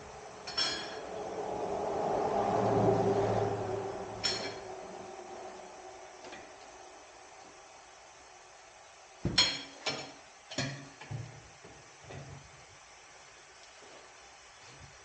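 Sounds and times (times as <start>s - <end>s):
low hum: 0.0s - 9.1s
ringing metallic clanks: 0.4s - 1.1s, 4.2s - 4.7s.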